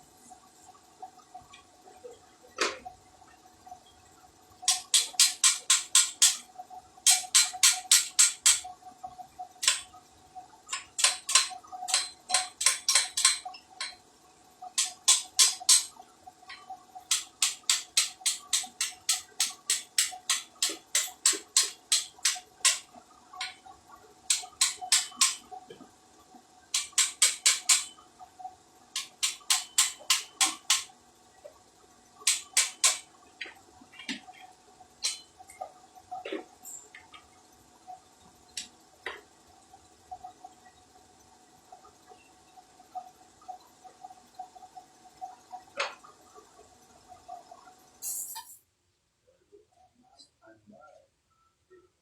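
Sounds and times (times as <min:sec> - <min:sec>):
faint steady hum: 0:00.0 - 0:52.0
ratchet wrench clicking: 0:04.7 - 0:06.4, 0:10.8 - 0:14.0.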